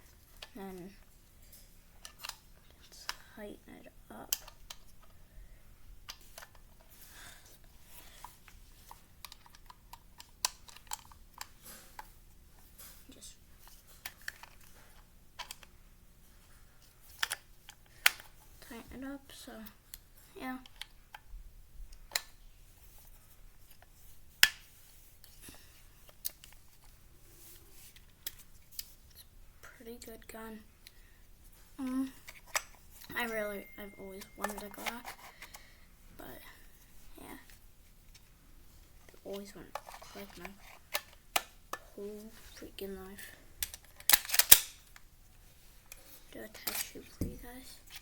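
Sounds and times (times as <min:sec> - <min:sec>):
small clicks and rubbing: 0:00.0 - 0:03.2, 0:04.2 - 0:05.2, 0:06.1 - 0:15.7, 0:16.8 - 0:18.5, 0:21.9 - 0:29.3, 0:37.3 - 0:48.0.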